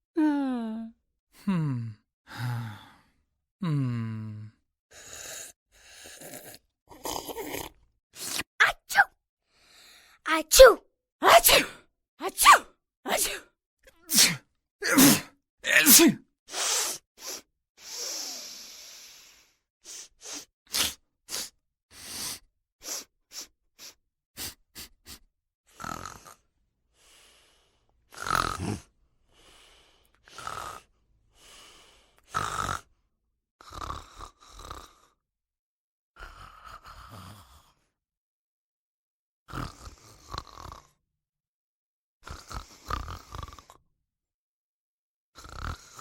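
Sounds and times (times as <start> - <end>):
person snoring: 1.4 - 8.5, 14.1 - 19.5, 25.7 - 26.5, 27.1 - 30.9, 31.5 - 32.9, 33.6 - 35.2, 36.2 - 37.8, 39.5 - 41.0, 42.3 - 43.8, 45.4 - 46.0
short breath sounds: 14.1 - 25.2, 27.0 - 27.9, 28.6 - 30.4, 31.3 - 32.3.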